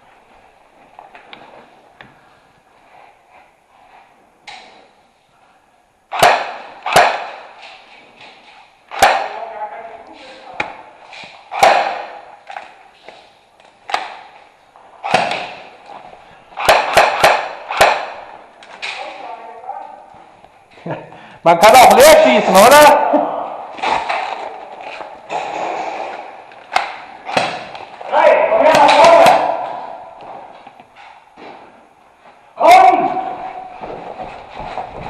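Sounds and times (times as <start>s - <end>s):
airsoft gun shots echoing: 6.1s - 7.6s, 8.9s - 9.5s, 11.5s - 12.3s, 15.0s - 15.7s, 16.6s - 18.4s, 25.3s - 27.8s.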